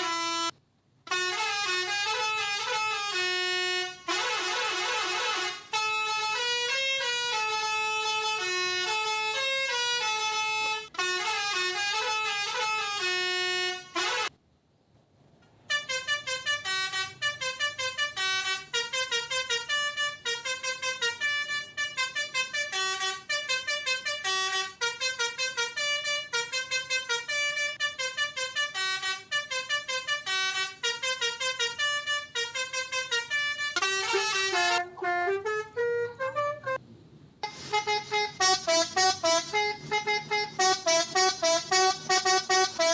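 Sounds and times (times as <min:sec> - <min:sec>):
melodica melody: 0:00.0 - 0:00.5, 0:01.1 - 0:14.3, 0:15.7 - 0:36.8, 0:37.4 - 0:42.9.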